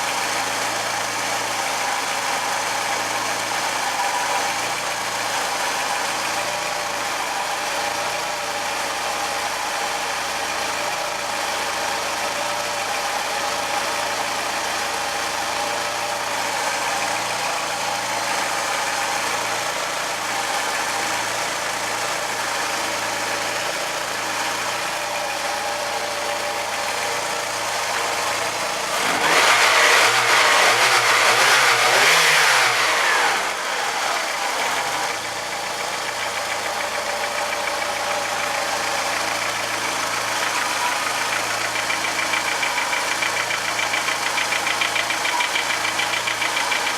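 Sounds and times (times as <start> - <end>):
car engine idling with knocking: 0.0 - 46.9
engine revving: 16.0 - 46.9.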